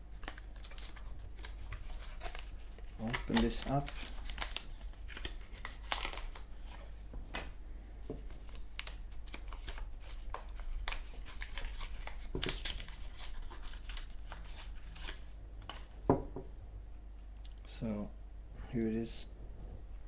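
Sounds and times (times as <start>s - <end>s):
packaging rustling and crinkling: 0.1s - 7.6s, 8.2s - 15.9s.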